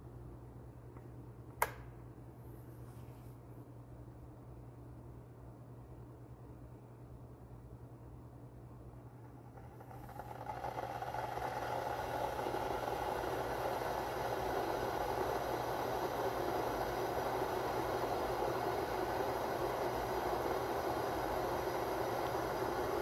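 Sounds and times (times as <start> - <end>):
electric kettle heating water: 9.1 - 23.0.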